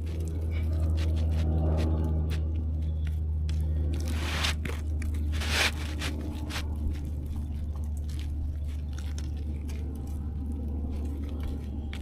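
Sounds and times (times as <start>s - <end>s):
shingles crunching: 3.6s - 9.9s
roof shingles scraping: 4.0s - 6.7s.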